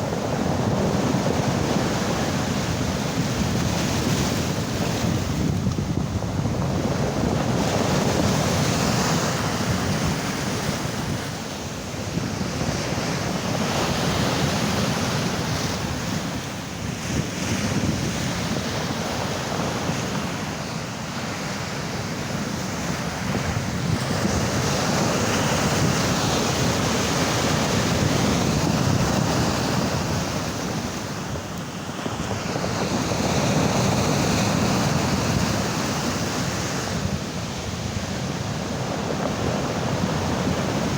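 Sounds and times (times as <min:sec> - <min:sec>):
sea surf breaking: 0:00.0 - 0:40.9
wind buffeting microphone: 0:00.0 - 0:40.9.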